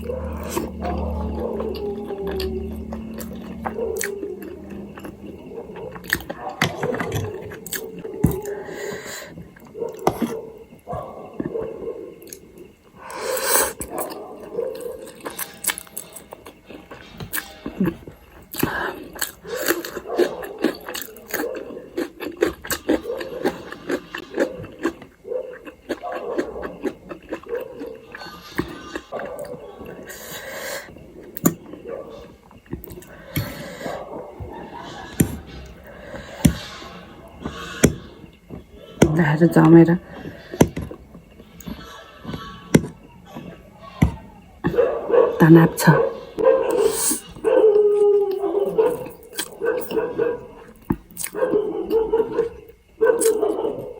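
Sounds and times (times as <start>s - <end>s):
wet chewing: 0.0s - 53.9s
wet chewing and mouth smacks: 18.4s - 30.3s, 50.7s - 51.5s.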